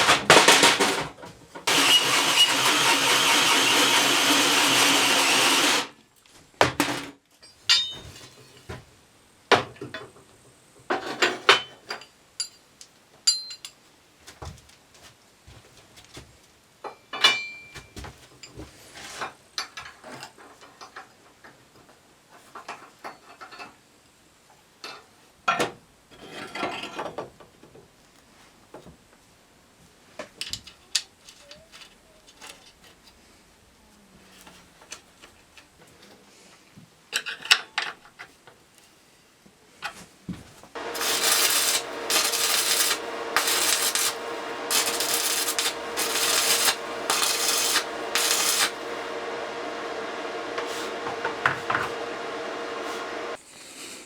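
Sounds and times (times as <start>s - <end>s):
file rasping on metal: 1.7s - 5.8s, 41.0s - 48.9s
knocks and clinks on metal: 6.9s - 8.3s, 13.2s - 13.8s, 16.9s - 18.6s.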